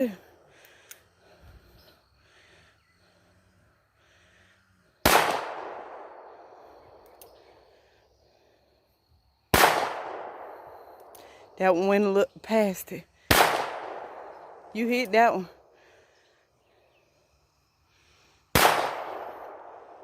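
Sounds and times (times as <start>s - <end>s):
handgun shot with echo: 5.1s - 6.1s, 9.6s - 10.4s, 18.6s - 19.6s.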